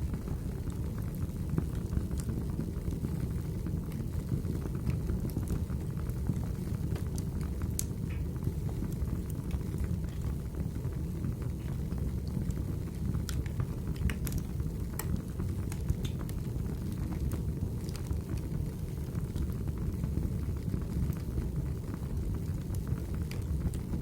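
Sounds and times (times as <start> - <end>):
logs crackling and popping: 0.0 - 24.0
low rumble of flames: 0.0 - 24.0.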